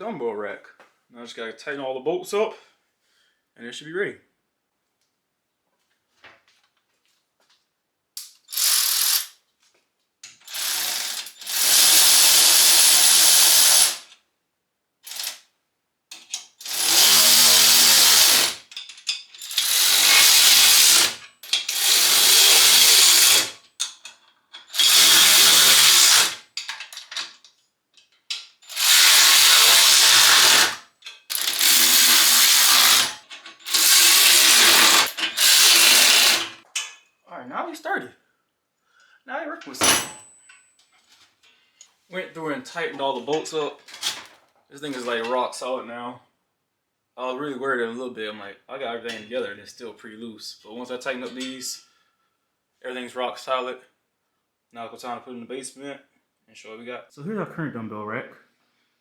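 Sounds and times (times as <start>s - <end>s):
power driver tightening bolts: 16.2s - 27.5s.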